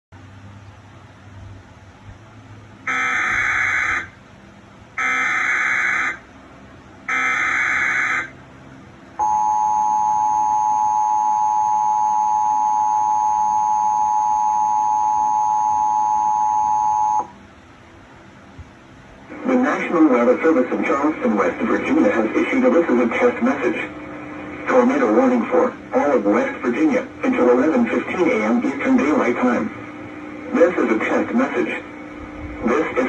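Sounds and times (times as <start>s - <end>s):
screeching data bursts: 2.9s - 4.1s, 7.1s - 8.3s
two-tone attention signal: 2.9s - 4.1s, 9.2s - 17.3s.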